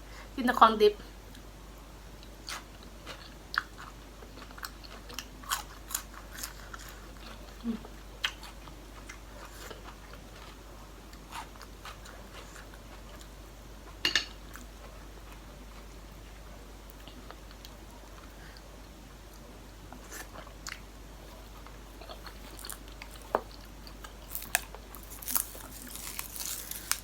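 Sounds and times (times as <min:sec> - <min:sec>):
person chewing and crunching food: 0:02.2 - 0:18.7, 0:19.3 - 0:27.0.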